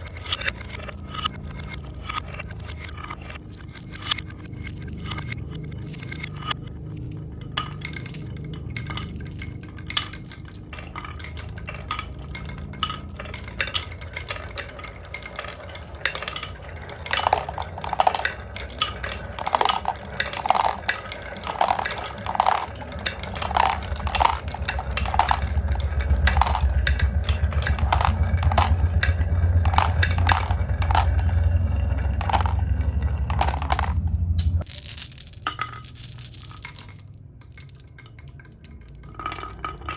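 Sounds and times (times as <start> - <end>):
marbles clacking on wood: 0.0 - 39.9
low rolling rumble: 6.8 - 39.9.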